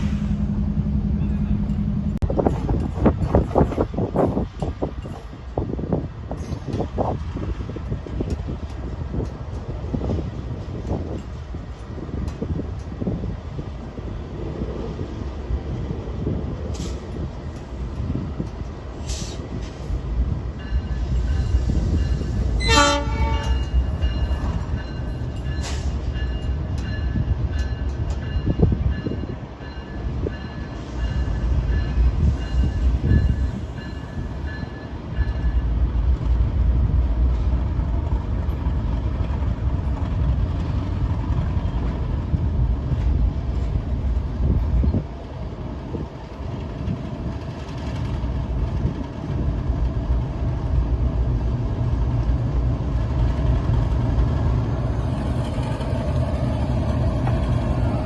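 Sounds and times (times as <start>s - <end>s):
freight train rumbling: 0.0s - 58.0s
train horn blast: 22.6s - 23.8s.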